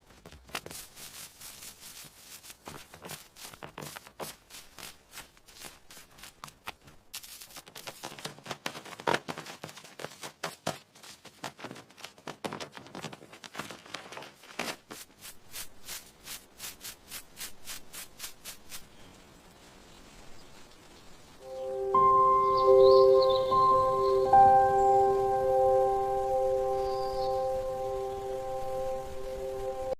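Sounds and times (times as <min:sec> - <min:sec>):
rough scraping strokes: 0:00.6 - 0:06.5, 0:14.4 - 0:19.1.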